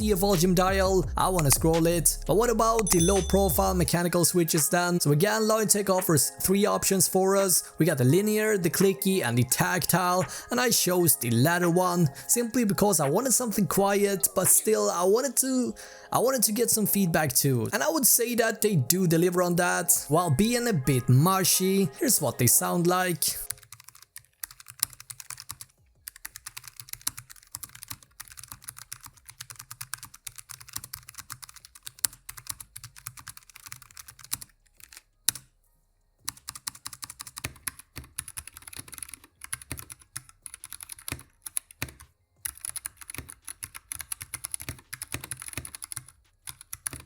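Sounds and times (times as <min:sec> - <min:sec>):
mechanical keyboard typing: 0:22.1 - 0:35.5, 0:36.2 - 0:47.0.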